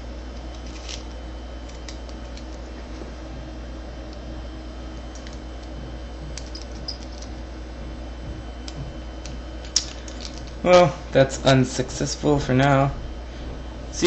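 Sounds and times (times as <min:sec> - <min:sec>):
low hum: 0:00.0 - 0:14.0
lock pick clicking and scraping: 0:01.6 - 0:02.6, 0:06.4 - 0:07.3.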